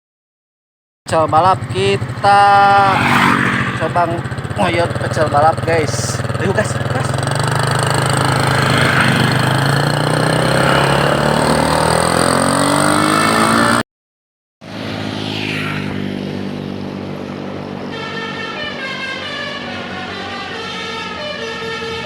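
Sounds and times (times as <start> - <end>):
vehicle engine accelerating: 1.1 - 13.8, 14.6 - 18.5
multi-tone bus horn: 17.5 - 22.0.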